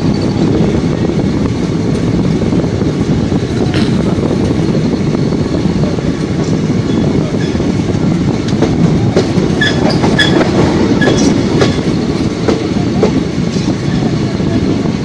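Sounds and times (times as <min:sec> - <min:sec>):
train wheels rumbling on rail: 0:00.0 - 0:15.0
wheels clicking over rail joints: 0:06.2 - 0:13.7
wheel squeaks: 0:09.6 - 0:11.4.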